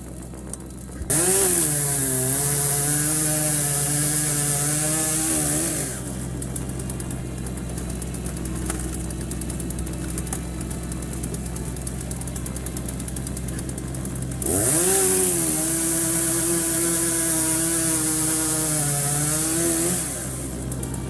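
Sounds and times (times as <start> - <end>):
firewood processor engine: 0.0 - 21.0
saw cutting through log: 1.0 - 21.0
fast rattle: 5.9 - 15.2.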